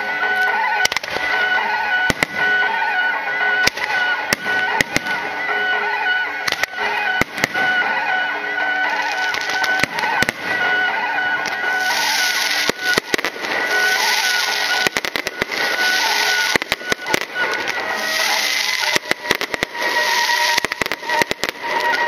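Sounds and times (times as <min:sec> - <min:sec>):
firework bangs: 0:00.0 - 0:22.0
thin steady tones: 0:00.0 - 0:22.0
firework crackling hiss: 0:11.7 - 0:22.0.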